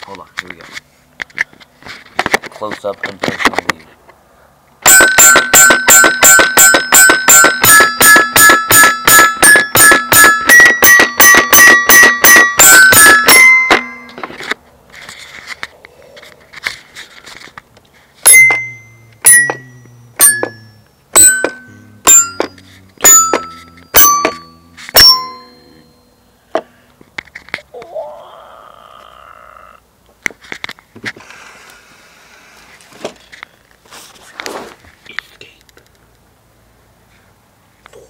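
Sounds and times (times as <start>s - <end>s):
electronic music pinging notes: 18.2s - 26.3s.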